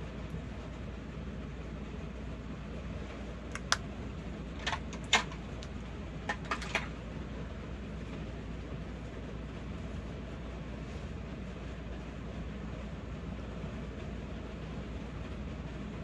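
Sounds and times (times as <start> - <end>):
plastic items clicking and tapping: 4.6 - 5.7, 6.3 - 6.9.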